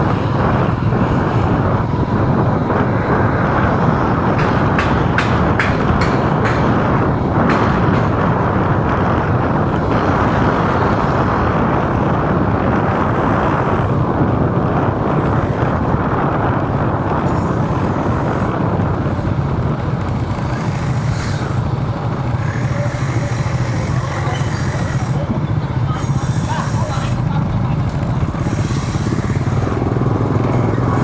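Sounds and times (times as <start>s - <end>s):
vehicle driving in traffic: 0.0s - 31.0s.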